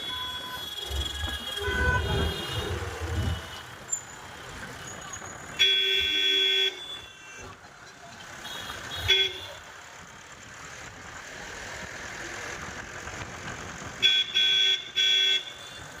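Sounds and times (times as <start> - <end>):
car horn honking: 0.0 - 3.8, 4.4 - 7.5, 8.4 - 9.6, 14.0 - 16.0
vehicle running noise: 0.0 - 16.0.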